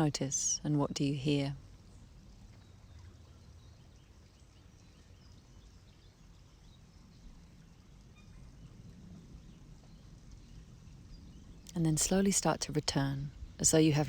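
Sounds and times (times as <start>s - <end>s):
breeze rumbling: 6.4s - 14.0s.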